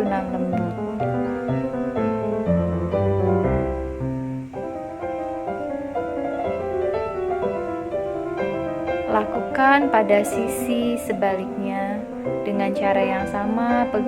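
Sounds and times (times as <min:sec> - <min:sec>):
piano music: 0:00.0 - 0:14.0.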